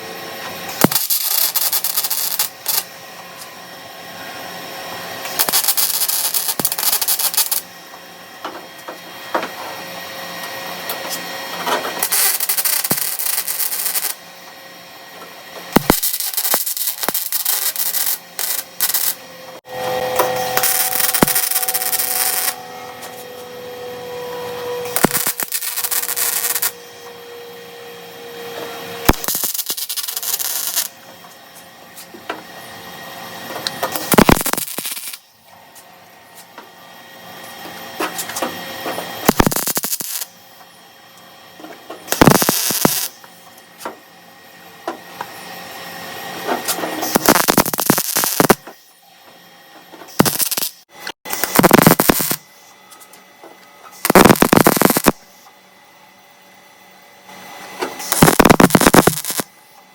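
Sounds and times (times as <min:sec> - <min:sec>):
crackling welds: 0:00.7 - 0:03.0, 0:05.2 - 0:07.7, 0:11.0 - 0:14.3, 0:15.6 - 0:23.2, 0:24.8 - 0:26.8, 0:29.0 - 0:31.0, 0:33.6 - 0:35.3, 0:38.1 - 0:40.4, 0:42.0 - 0:43.3, 0:46.5 - 0:48.9, 0:50.1 - 0:52.5, 0:53.9 - 0:55.3, 0:57.9 - 0:59.6.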